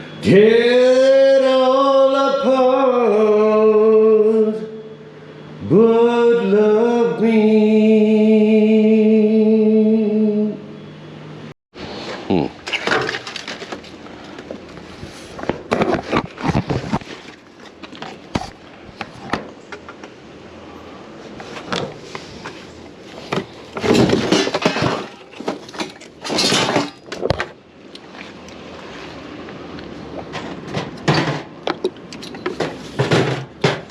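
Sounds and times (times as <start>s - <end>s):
scrap metal clattering and banging: 21.5s - 27.4s, 30.2s - 31.6s, 32.2s - 33.9s.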